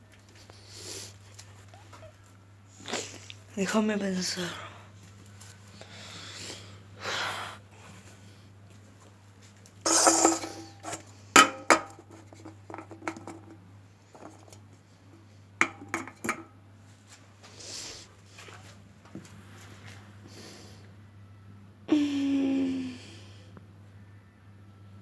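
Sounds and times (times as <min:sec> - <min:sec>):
low steady hum: 0:07.6 - 0:25.0
hard objects clinking and knocking: 0:09.9 - 0:13.6, 0:14.2 - 0:14.6, 0:15.6 - 0:16.5
rustling clatter: 0:09.9 - 0:13.6, 0:14.2 - 0:14.6.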